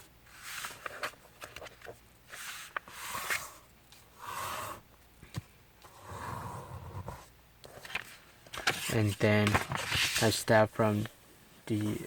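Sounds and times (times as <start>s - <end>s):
paper rustling while folded: 0.3s - 3.5s, 7.8s - 10.4s
paper crackles: 7.8s - 10.4s.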